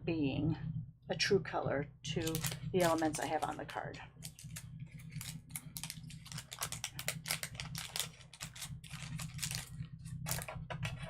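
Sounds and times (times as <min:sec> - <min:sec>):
steady low hum: 0:00.0 - 0:11.0
paper pieces clicking and tapping: 0:04.2 - 0:09.7.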